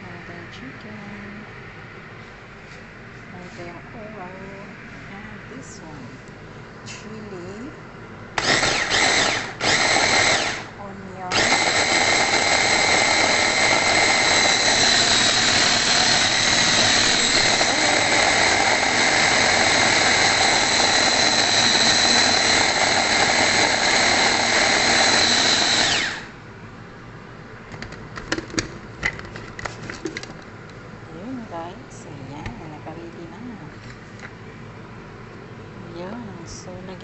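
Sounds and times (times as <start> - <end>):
food processor motor whirring: 8.4 - 26.4.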